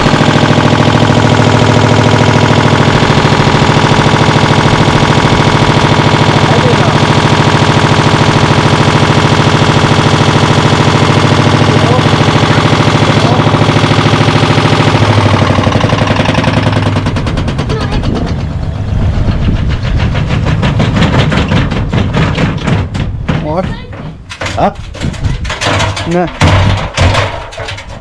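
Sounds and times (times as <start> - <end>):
washing machine drum knocking: 19.3 - 28.0.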